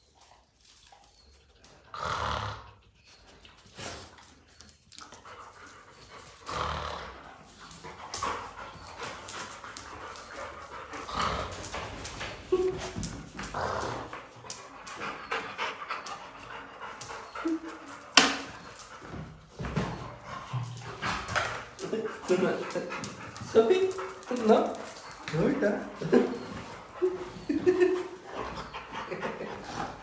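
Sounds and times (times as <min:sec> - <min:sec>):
dog panting: 0:02.7 - 0:30.0
dog whining: 0:17.2 - 0:19.0.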